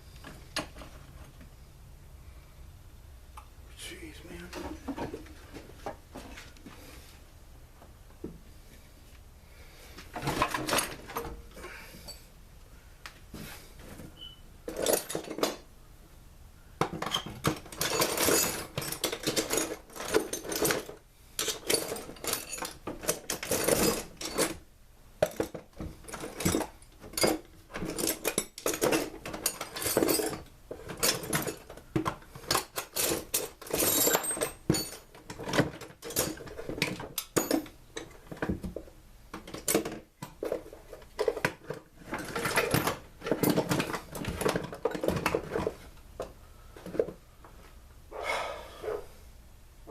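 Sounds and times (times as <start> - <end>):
metal tools clinking and rattling: 10.2 - 11.4, 14.7 - 15.6, 17.0 - 24.6, 25.2 - 38.5, 39.4 - 45.8.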